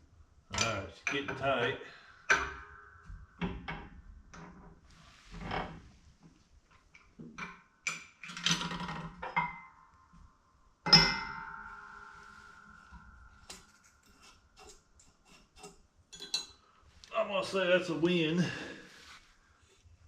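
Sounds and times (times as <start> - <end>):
ringing metallic strike: 10.9 - 13.5
metal tools clanking: 15.6 - 16.6.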